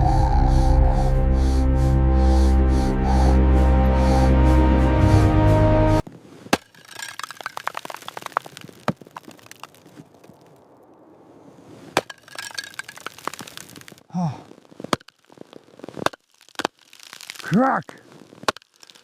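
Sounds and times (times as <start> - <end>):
brittle material cracking: 6.5 - 11.0, 12.0 - 19.0.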